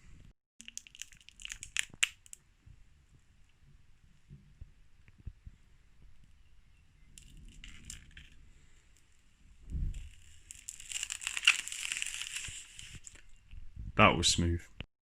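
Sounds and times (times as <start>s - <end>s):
plastic packaging crinkling: 0.6s - 2.4s, 7.2s - 8.4s, 9.9s - 13.5s
dull thump: 9.6s - 10.2s.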